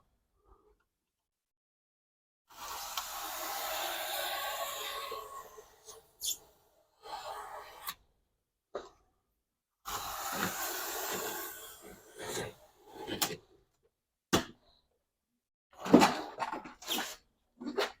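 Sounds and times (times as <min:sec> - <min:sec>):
knife cutting foam board: 0:02.5 - 0:08.0, 0:09.9 - 0:13.4, 0:16.8 - 0:18.0.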